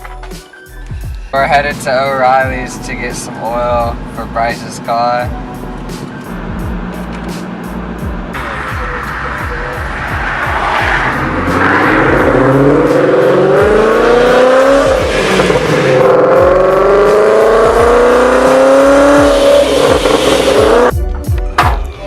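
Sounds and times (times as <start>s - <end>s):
car engine accelerating hard: 2.7s - 20.9s.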